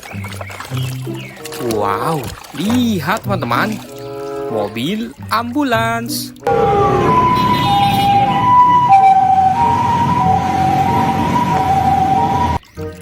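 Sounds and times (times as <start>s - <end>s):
ambulance siren two-tone: 6.5s - 12.6s.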